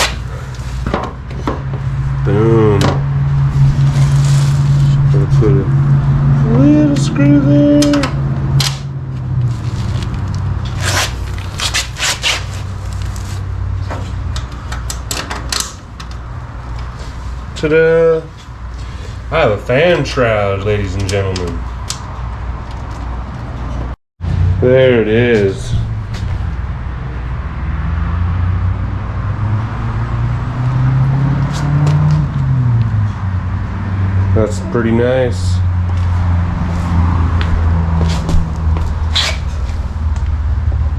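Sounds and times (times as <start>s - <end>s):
steady low hum: 0.0s - 14.7s.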